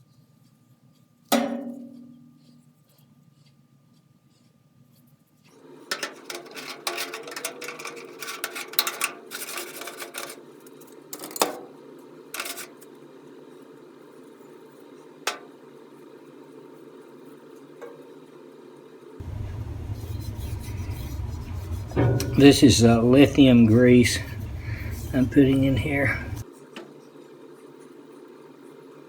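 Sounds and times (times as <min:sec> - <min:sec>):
steady low hum: 0:19.2 - 0:26.4.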